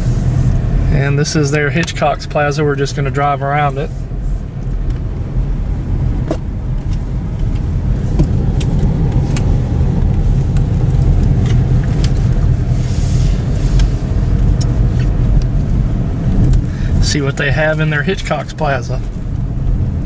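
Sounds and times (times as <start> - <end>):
engine and road rumble: 0.0 - 20.0
light clicks and rattles: 6.3 - 12.8.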